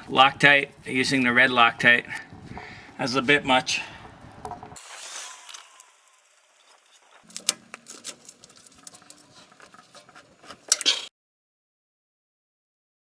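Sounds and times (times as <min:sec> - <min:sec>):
metal tools clicking and tapping: 0:07.2 - 0:11.1.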